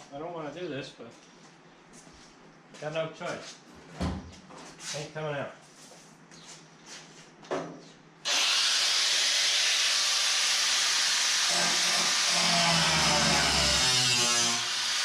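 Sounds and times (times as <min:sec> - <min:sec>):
power tool cutting metal: 0:08.3 - 0:15.0.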